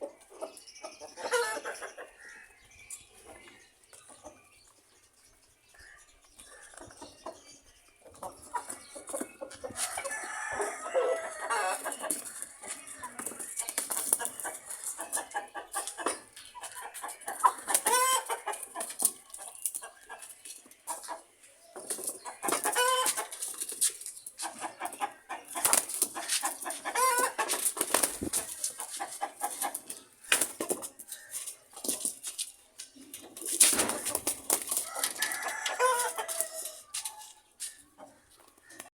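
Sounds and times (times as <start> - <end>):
chickens clucking and calling: 0.0 - 5.1, 6.3 - 32.1, 33.0 - 38.9.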